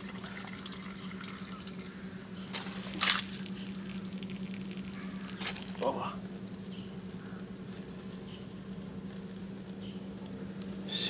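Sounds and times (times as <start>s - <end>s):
water dripping and trickling: 0.0s - 5.9s
steady low hum: 0.0s - 11.0s.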